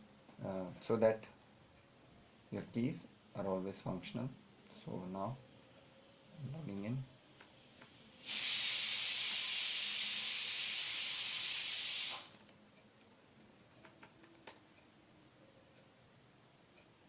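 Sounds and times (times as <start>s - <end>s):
loud steady hiss: 0.0s - 12.6s
faint clicks: 12.3s - 15.0s.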